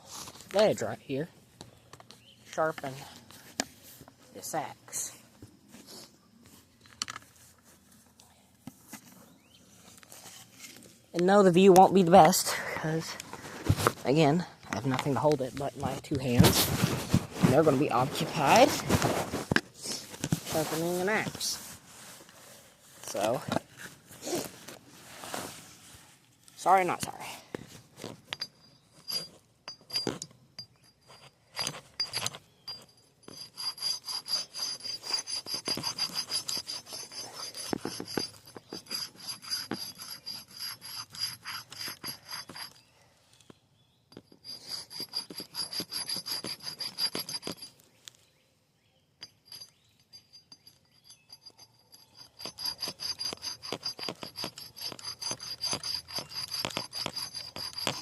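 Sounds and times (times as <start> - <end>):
axe blade rasping on concrete: 30.9 - 42.8, 44.4 - 47.8, 49.2 - 58.0.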